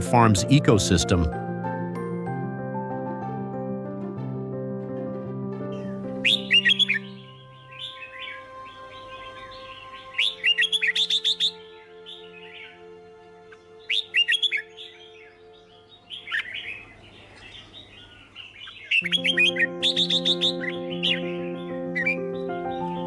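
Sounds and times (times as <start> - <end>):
soft background music: 0.0 - 17.6, 19.0 - 23.0
songbird chirping: 5.7 - 23.0.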